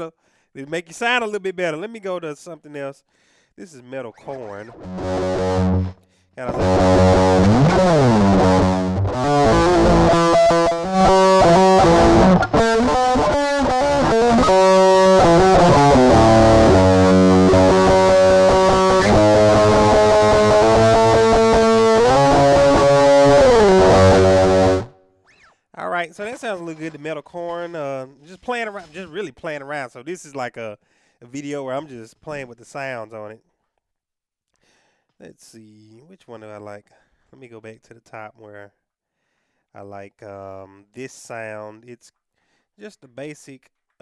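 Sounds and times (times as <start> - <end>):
distorted electric guitar: 4.2 - 25.0.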